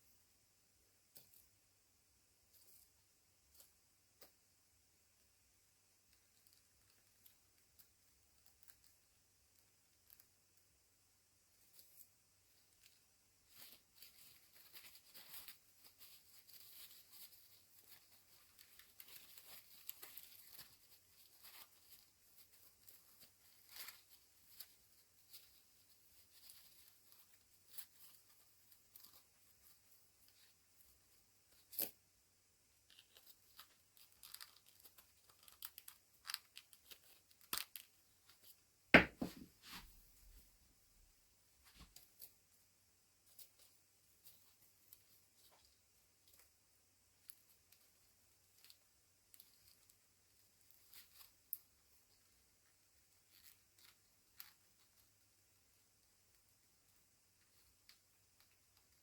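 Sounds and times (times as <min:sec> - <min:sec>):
plastic packaging rustling and tearing: 0:32.9 - 0:37.9
loud knock: 0:39.0 - 0:39.5.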